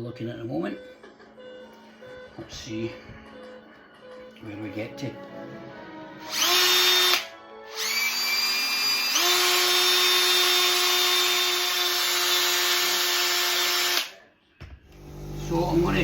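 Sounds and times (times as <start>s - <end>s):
electric drill whining: 6.2s - 14.2s, 14.9s - 16.0s.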